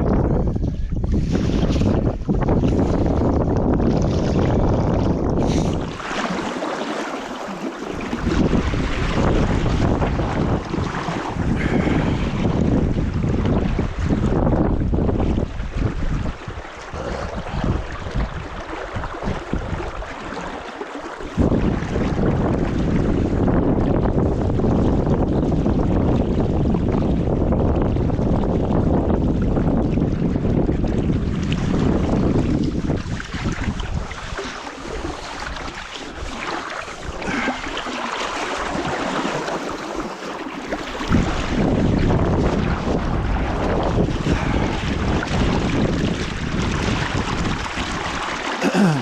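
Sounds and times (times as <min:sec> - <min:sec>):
wind buffeting microphone: 0:00.0 - 0:06.5, 0:07.2 - 0:49.0
river water rushing: 0:05.8 - 0:08.4, 0:34.4 - 0:41.4, 0:48.0 - 0:49.0.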